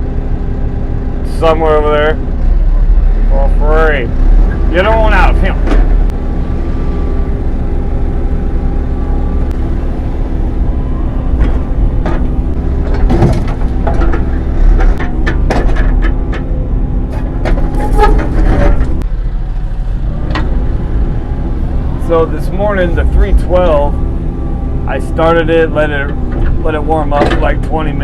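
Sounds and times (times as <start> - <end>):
excavator diesel engine running: 0.0 - 28.0
concrete knocks and clanks: 12.8 - 16.5.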